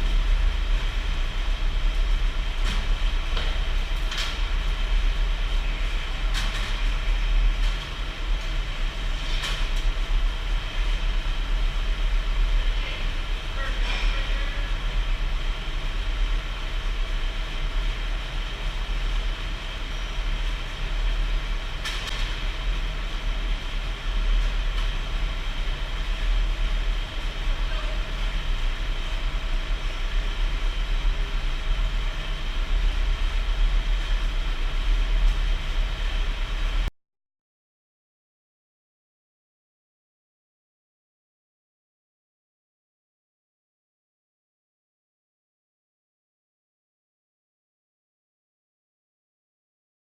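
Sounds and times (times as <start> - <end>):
heavy industrial machinery rumbling: 0.0 - 36.9.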